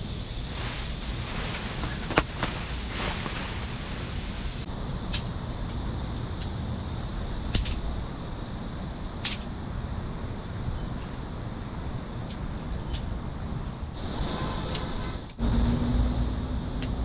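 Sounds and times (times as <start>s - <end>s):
urban background rumble: 0.0s - 17.0s
tent gear clicks and knocks: 0.5s - 3.8s.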